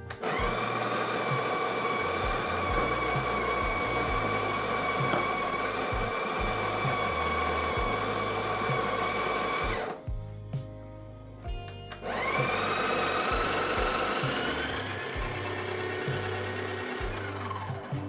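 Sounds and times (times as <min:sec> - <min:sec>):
coffee grinder motor whine: 0:00.0 - 0:10.0, 0:12.0 - 0:18.0.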